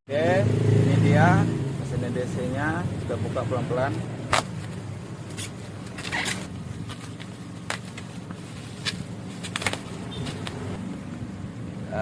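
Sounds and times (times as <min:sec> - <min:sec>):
packaging scraping rustle: 0:04.4 - 0:10.7.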